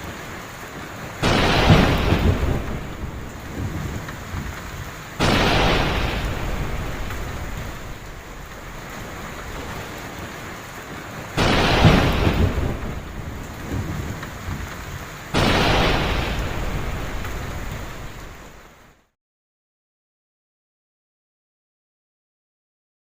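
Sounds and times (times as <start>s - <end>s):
heavy rain falling: 0.0s - 19.1s
thunder claps: 0.8s - 18.8s.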